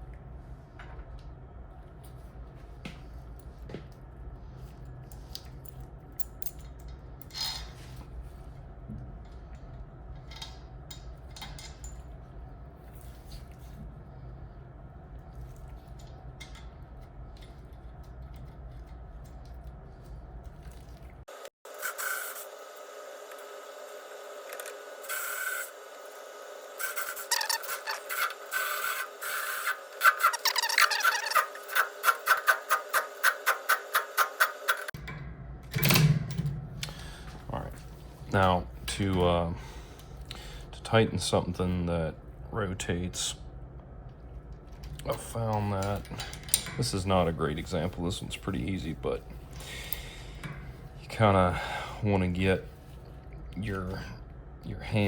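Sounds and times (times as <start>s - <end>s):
steady low hum: 0.0s - 21.3s, 34.9s - 55.0s
tools scraping metal: 26.8s - 35.0s.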